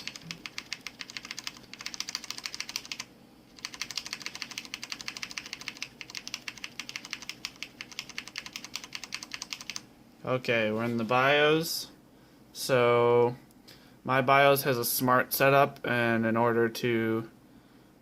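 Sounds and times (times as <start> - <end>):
keyboard key pressed rapidly: 0.0 - 9.8.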